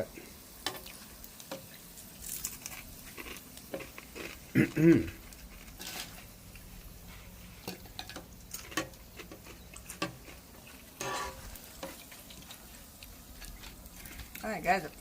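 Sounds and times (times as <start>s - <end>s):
fish frying in hot oil: 0.0s - 15.0s.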